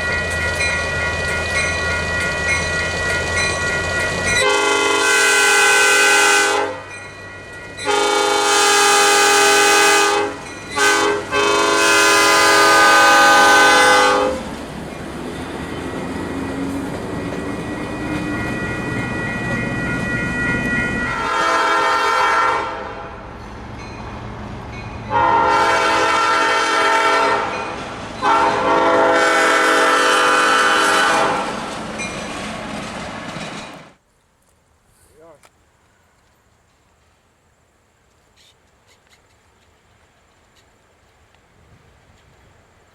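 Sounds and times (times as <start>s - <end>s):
locomotive rumbling past: 0.0s - 34.0s
locomotive horn blasts: 4.3s - 6.9s, 7.8s - 14.5s, 20.8s - 23.2s, 25.1s - 27.6s, 28.2s - 31.5s.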